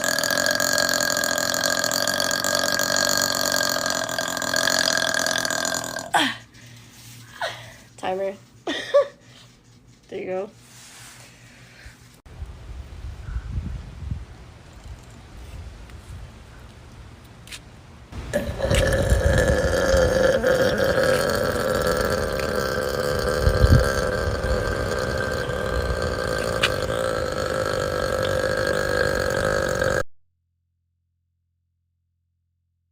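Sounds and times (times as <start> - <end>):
woman's long gravelly burp: 0.0 - 6.5, 18.2 - 30.1.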